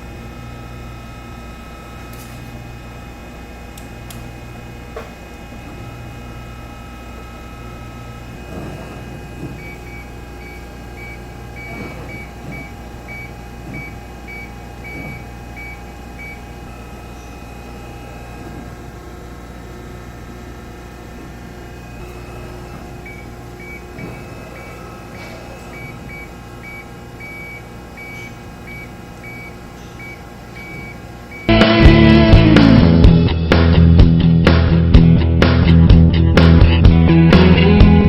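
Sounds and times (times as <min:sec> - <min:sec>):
hydraulic pump motor humming: 0:00.0 - 0:36.2.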